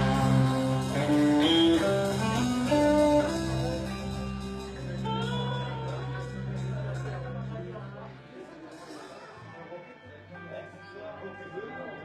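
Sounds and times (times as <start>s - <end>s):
guitar single notes: 0.0s - 8.3s
live blues band: 0.0s - 8.3s.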